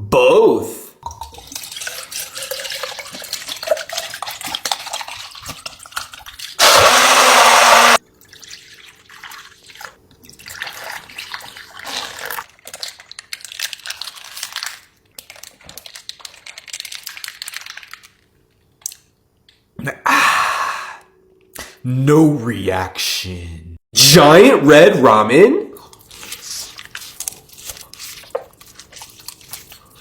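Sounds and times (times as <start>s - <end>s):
wet chewing and smacking: 25.8s - 30.0s.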